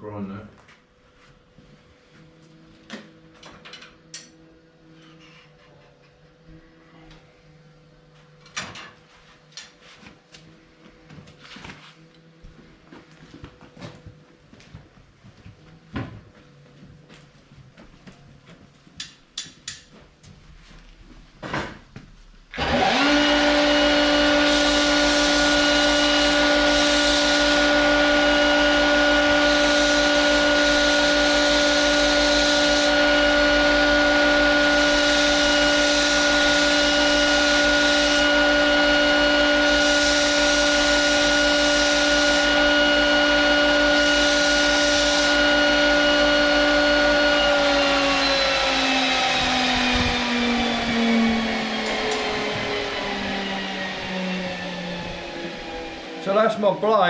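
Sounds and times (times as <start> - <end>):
power grinder grinding steel: 22.6 - 56.8.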